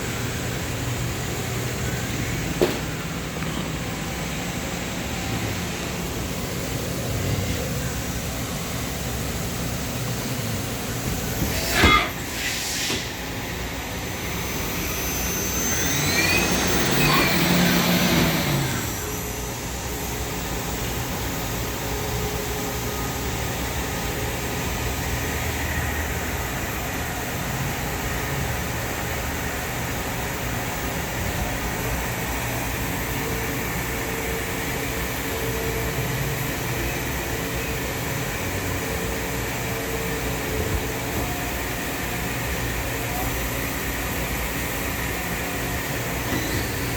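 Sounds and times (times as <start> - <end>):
lathe machine humming: 0.0 - 21.4
machine whines: 10.3 - 22.2, 31.0 - 46.9.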